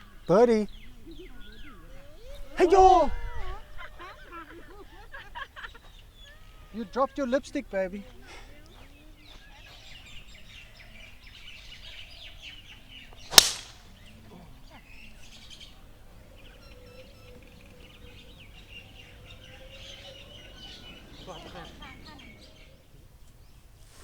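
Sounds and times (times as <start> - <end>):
small birds twittering: 0.0 - 23.8
golf club striking ball: 13.3 - 13.9.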